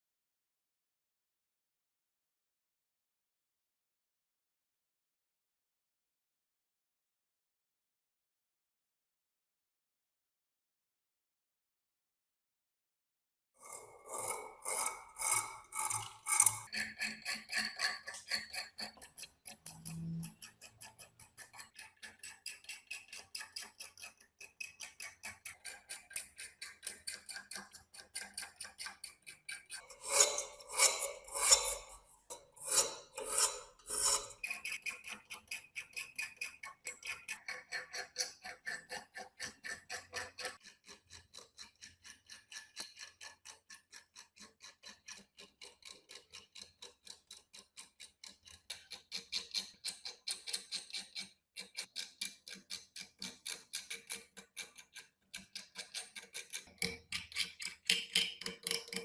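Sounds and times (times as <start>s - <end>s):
hand tool scraping rusty metal: 13.6s - 24.2s, 24.8s - 43.2s.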